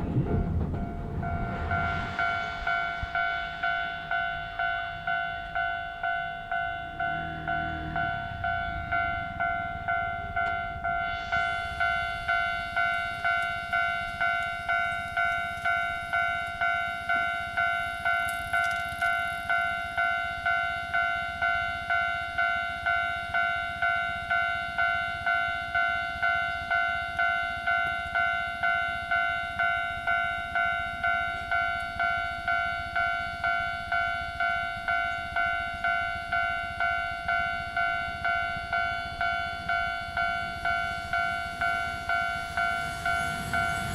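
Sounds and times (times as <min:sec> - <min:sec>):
level-crossing bell two-tone ding: 0:03.6 - 0:14.4.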